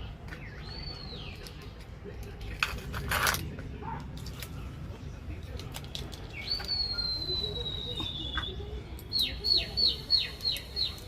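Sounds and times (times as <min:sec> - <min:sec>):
bird singing whistled notes: 0:00.4 - 0:01.4, 0:06.3 - 0:11.0.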